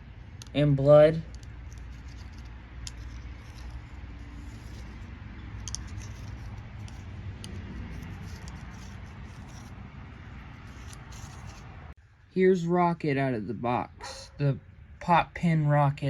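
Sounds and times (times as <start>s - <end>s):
steady low hum: 0.0s - 15.4s
toy and packaging handled: 1.2s - 9.8s, 10.6s - 11.7s.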